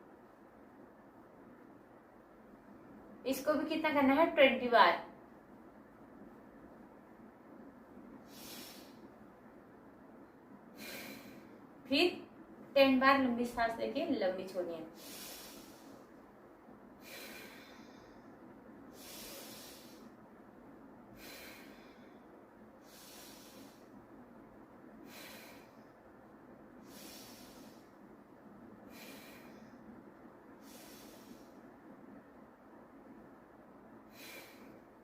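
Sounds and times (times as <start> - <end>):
woman breathing slowly: 6.0 - 12.6, 14.9 - 35.0.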